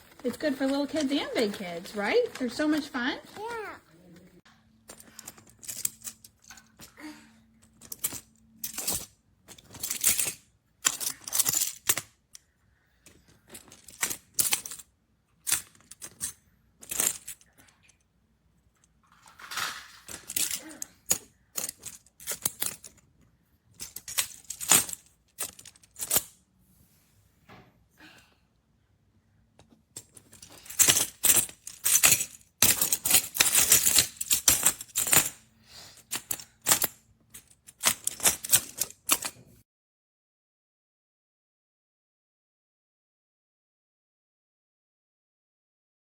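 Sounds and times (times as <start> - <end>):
magnetic blocks clacking: 30.0 - 35.4, 36.1 - 39.3.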